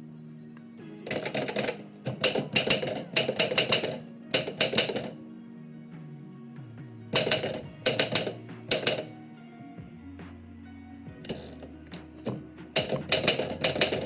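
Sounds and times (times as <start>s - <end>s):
background music with held tones: 0.0s - 14.0s.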